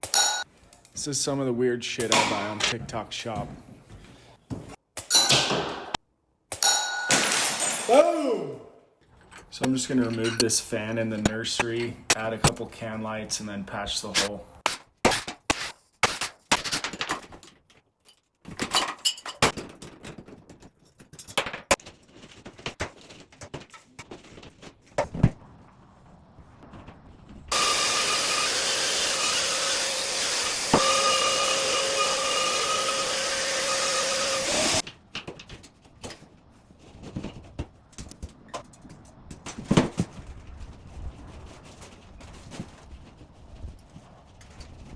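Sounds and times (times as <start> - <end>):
knocks and clatter on ceiling: 16.5 - 25.4
power tool whining: 27.5 - 34.8.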